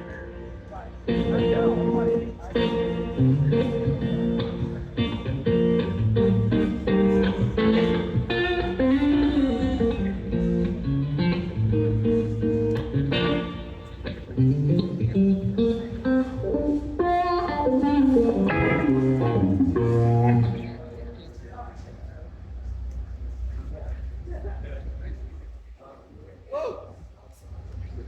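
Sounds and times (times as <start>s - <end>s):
electric guitar playing: 0.0s - 21.1s
low bass notes: 0.0s - 21.7s.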